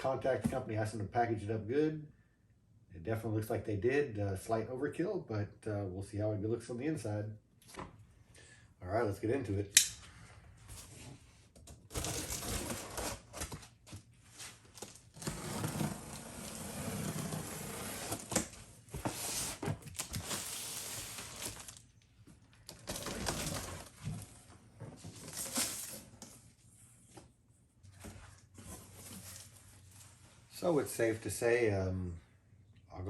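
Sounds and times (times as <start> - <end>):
cardboard box being opened: 14.6 - 21.8
hands rummaging through packing peanuts: 19.1 - 21.8.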